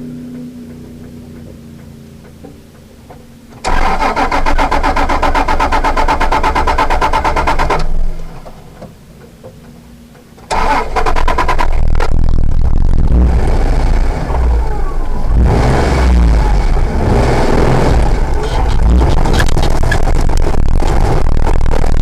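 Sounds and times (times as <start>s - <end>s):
engine running: 0.0s - 22.0s
engine cranking on starter: 3.5s - 8.6s, 10.4s - 12.3s.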